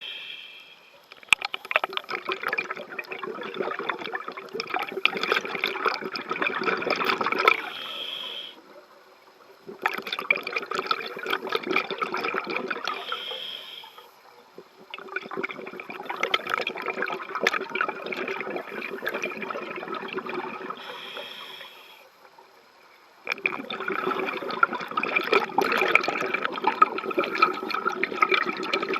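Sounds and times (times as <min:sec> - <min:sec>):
diver inhaling through regulator: 0:00.0 - 0:00.9, 0:07.5 - 0:08.6, 0:12.9 - 0:14.1, 0:20.8 - 0:22.1
exhaled bubbles underwater: 0:01.2 - 0:22.5, 0:23.2 - 0:28.9.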